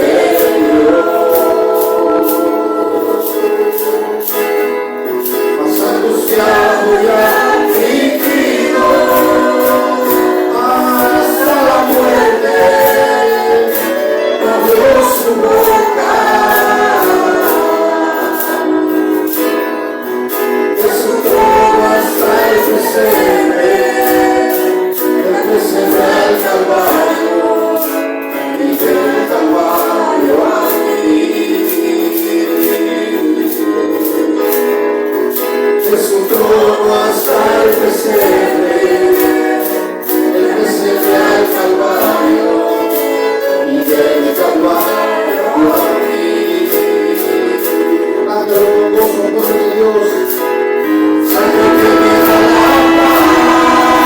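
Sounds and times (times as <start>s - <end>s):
group singing worship song: 0.0s - 54.0s
tambourine beat: 0.0s - 54.0s.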